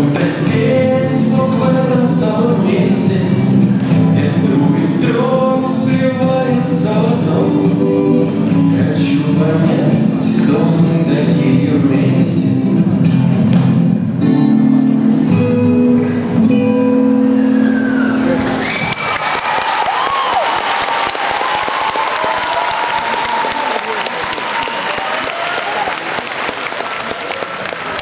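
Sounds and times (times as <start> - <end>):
pop song with singing: 0.0 - 13.8.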